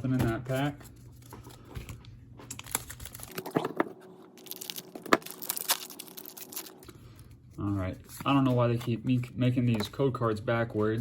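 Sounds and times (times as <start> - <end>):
foil wrapper tearing and crinkling: 2.5 - 3.6, 4.4 - 6.9.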